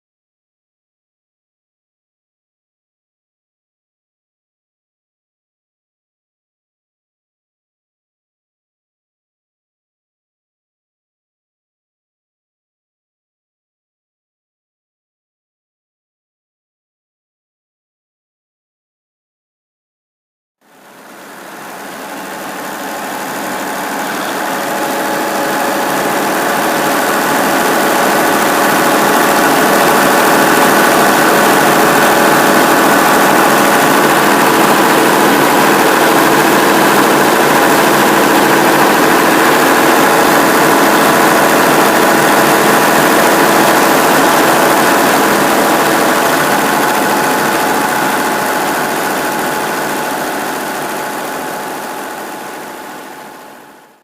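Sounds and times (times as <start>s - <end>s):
diesel engine running steadily: 20.7s - 54.0s.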